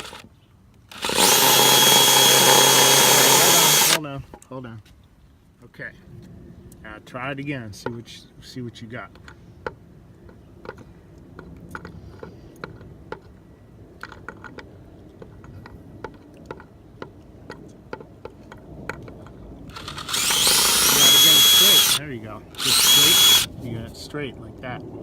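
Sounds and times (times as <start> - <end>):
drill clicks and taps: 0.0 - 0.2, 0.8 - 4.0, 19.7 - 22.0, 22.6 - 23.5
drill motor whine: 0.0 - 0.2, 0.9 - 4.0, 19.7 - 23.5.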